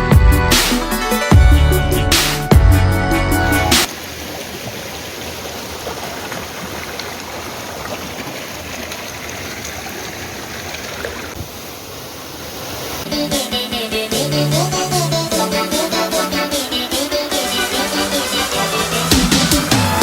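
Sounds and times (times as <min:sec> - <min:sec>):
electronic background music: 0:00.0 - 0:03.9, 0:13.1 - 0:20.0
river water rushing: 0:03.8 - 0:20.0.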